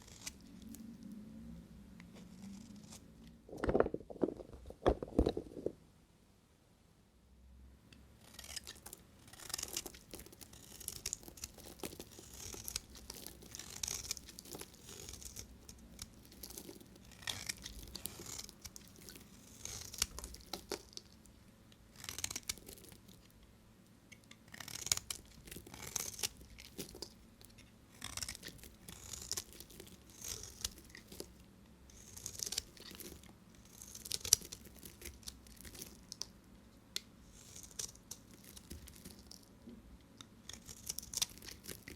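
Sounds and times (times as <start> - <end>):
knife cutting soap: 8.2 - 23.3, 24.1 - 36.4, 40.2 - 41.9.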